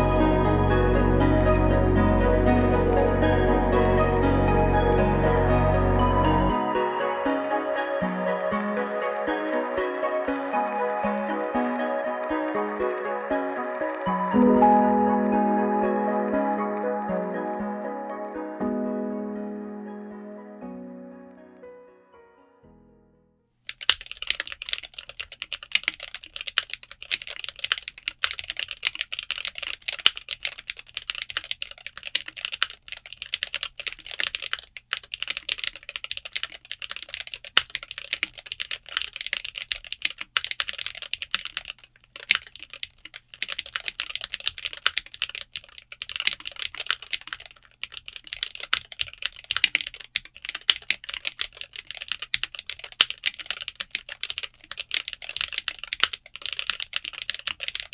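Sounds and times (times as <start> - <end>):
fast keyboard typing: 23.7 - 57.9.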